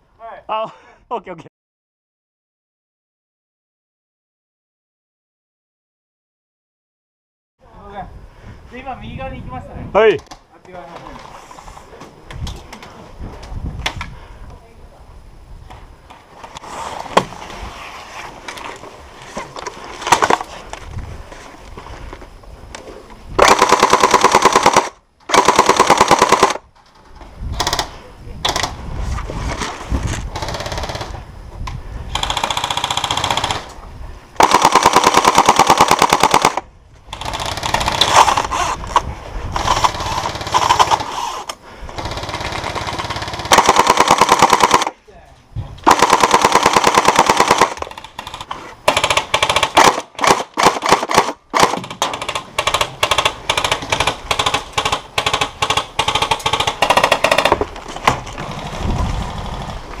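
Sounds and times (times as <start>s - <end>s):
airsoft gun firing bursts: 23.4s - 26.6s, 30.3s - 31.1s, 32.1s - 33.7s, 34.4s - 38.6s, 39.6s - 44.9s, 45.8s - 57.6s.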